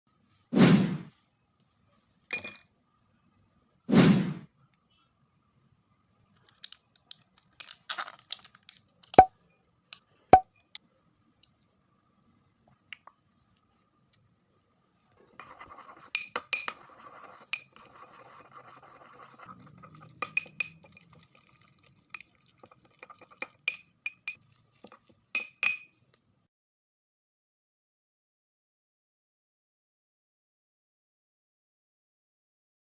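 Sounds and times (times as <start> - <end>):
brittle glass crushed and crunching: 6.5 - 9.2.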